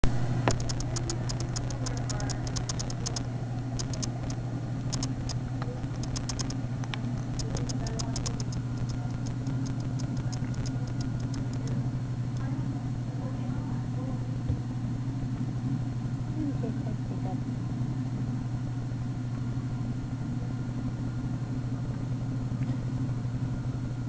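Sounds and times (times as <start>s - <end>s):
steady low hum: 0.0s - 24.0s
faint high ticks: 0.5s - 3.2s, 3.8s - 11.8s.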